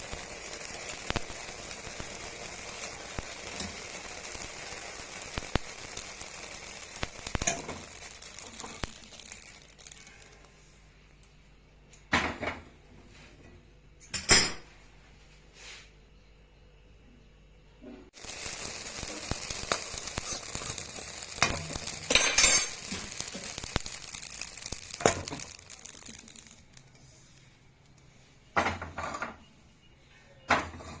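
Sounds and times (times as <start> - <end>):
seeds popping in hot pan: 0.0 - 11.4, 18.1 - 29.2.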